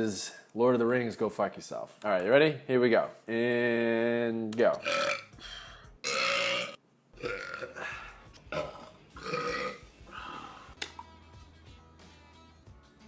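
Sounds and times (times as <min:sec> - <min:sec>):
man burping: 0:04.8 - 0:05.3, 0:06.0 - 0:10.7.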